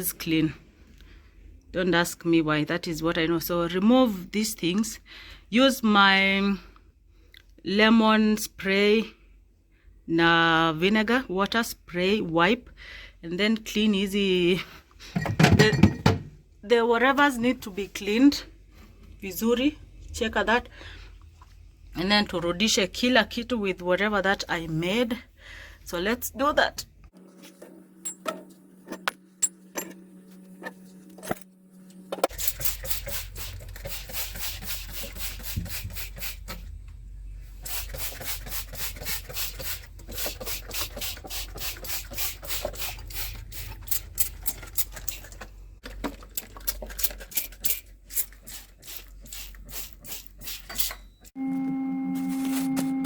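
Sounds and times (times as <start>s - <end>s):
steady humming tone: 27.2s - 32.3s.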